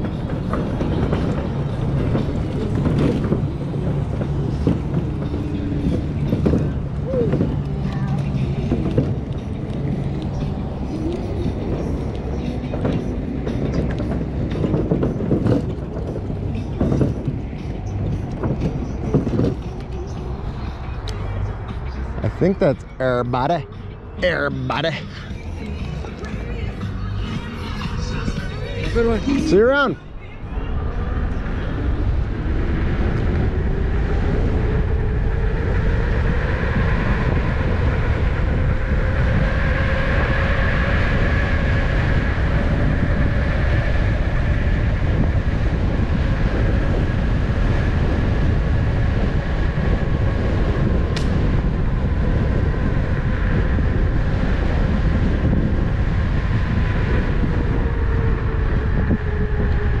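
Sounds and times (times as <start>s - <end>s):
wind rumbling on microphone: 0.0s - 60.0s
hub motor whining: 23.7s - 60.0s.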